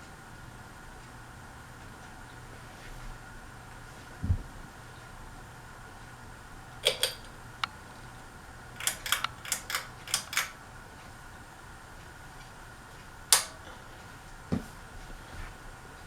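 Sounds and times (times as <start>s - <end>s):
ceiling fan motor hum: 0.0s - 16.0s
sharp clicks: 6.8s - 7.8s, 8.8s - 10.6s.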